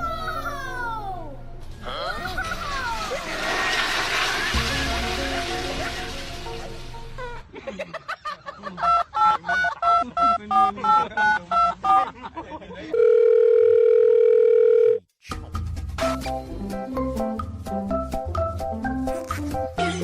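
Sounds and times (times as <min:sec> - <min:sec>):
steady telephone tone: 0:12.9 - 0:15.0.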